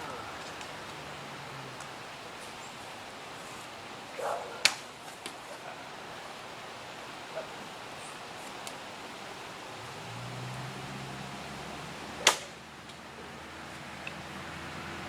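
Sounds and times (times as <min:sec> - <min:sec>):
bowstring snapping: 0:12.2 - 0:13.0.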